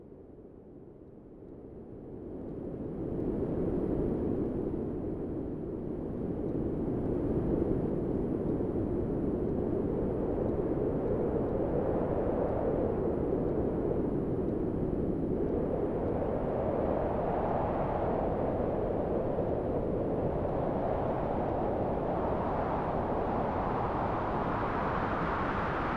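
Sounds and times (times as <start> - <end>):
rushing wind gusts: 15.5 - 25.9.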